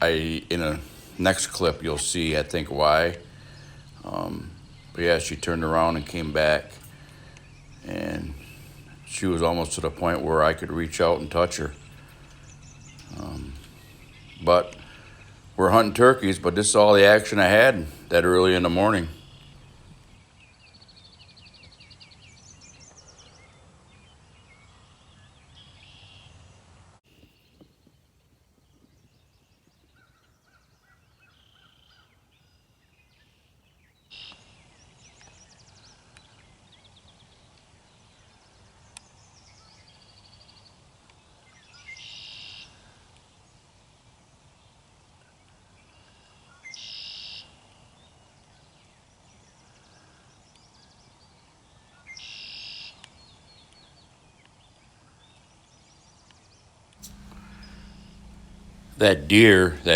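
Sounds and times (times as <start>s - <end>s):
loud short bird calls: 0.0s - 20.2s, 57.0s - 59.9s
songbirds singing and calling: 0.0s - 43.6s, 44.6s - 59.9s.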